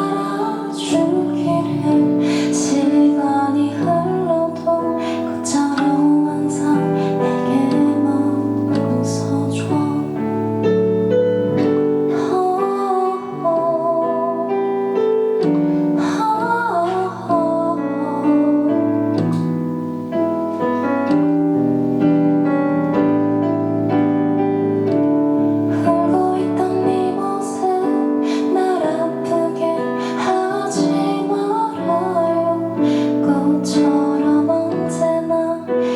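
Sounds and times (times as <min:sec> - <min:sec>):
woman singing: 0:00.0 - 0:10.5, 0:11.9 - 0:19.4, 0:25.7 - 0:35.9
keyboard chords: 0:00.0 - 0:35.9.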